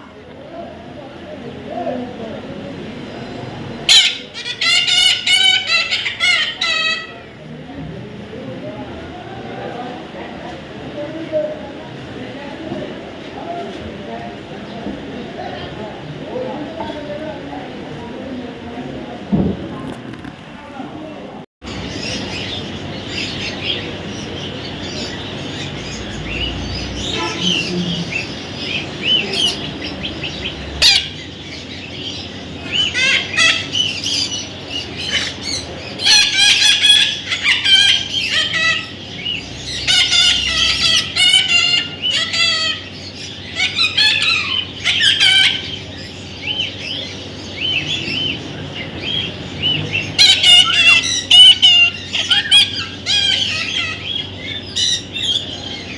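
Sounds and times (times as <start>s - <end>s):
baby parrot chirping: 3.9s - 7.2s, 24.9s - 31.4s, 32.1s - 48.4s, 50.0s - 55.9s.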